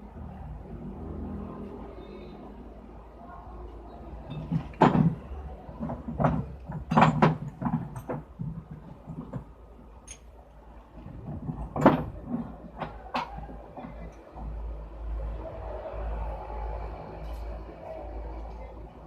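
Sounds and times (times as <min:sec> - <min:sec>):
knocks and clanks on tyre wheel: 0:04.3 - 0:09.6, 0:11.0 - 0:14.6.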